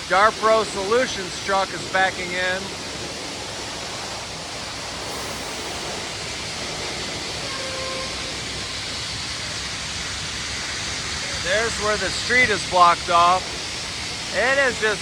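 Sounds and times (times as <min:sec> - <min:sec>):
sandblasting hissing rush: 0:03.5 - 0:15.0.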